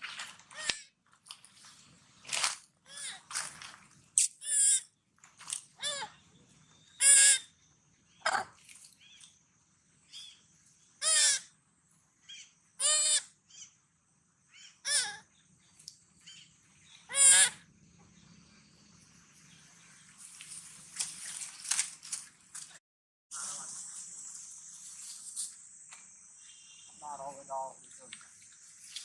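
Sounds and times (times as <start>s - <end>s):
baby monkey crying: 2.8s - 3.3s, 4.4s - 4.9s, 5.8s - 6.2s, 7.0s - 7.5s, 11.0s - 11.5s, 12.3s - 13.6s, 14.5s - 15.3s, 17.1s - 17.6s.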